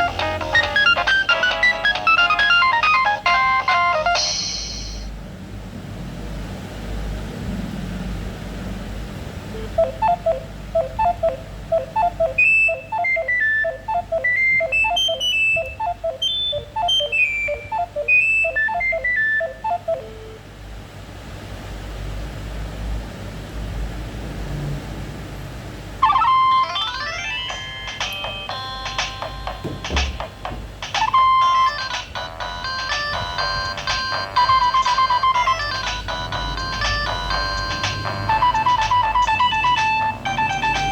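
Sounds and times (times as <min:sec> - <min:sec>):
phone ringtone beeping notes: 0:00.0 - 0:05.1, 0:09.6 - 0:20.4, 0:26.0 - 0:40.9
ringtone with rising sweep: 0:00.0 - 0:05.1, 0:09.6 - 0:20.4, 0:26.0 - 0:30.2, 0:30.8 - 0:40.9.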